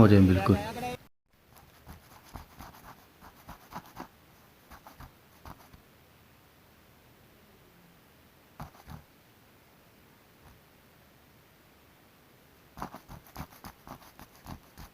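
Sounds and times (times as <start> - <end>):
spreader scratching filler on panel: 12.8 - 14.9.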